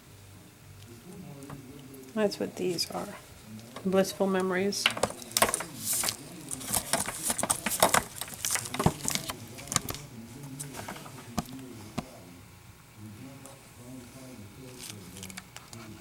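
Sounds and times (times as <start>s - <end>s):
light taps and clicks from handling: 4.8s - 10.0s.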